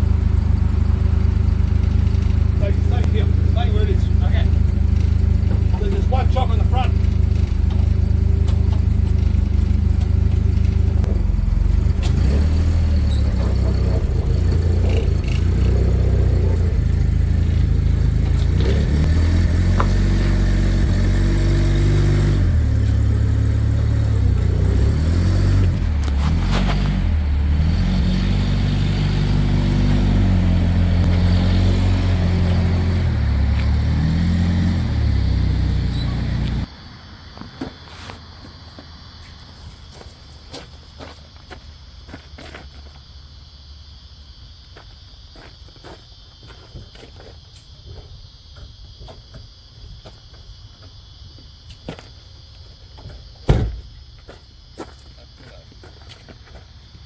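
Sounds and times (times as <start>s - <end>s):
truck engine revving: 0.0s - 36.7s.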